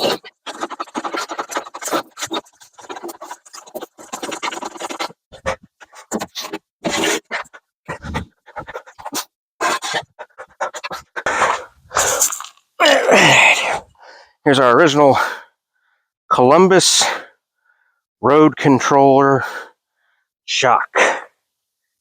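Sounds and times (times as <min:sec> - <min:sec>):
handling noise scraping and rustling: 0:00.0 - 0:12.7.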